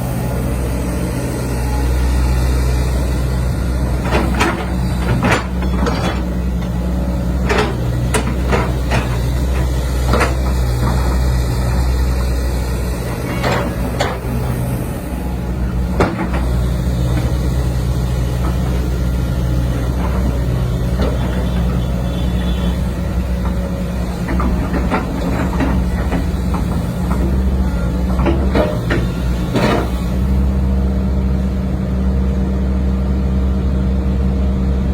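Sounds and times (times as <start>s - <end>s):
heavy diesel engine humming: 0.0s - 34.9s
sharp metal knocks and clanks: 4.0s - 10.6s, 13.3s - 14.4s, 16.0s - 16.6s, 28.2s - 30.0s.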